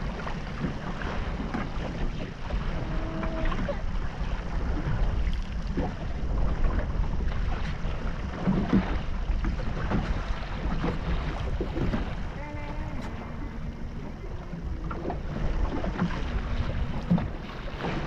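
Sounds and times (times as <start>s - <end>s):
boat engine rumble: 0.0s - 18.0s
water noise: 0.0s - 18.0s
wind buffeting microphone: 0.0s - 18.0s
knocks or splashes: 6.6s - 18.0s.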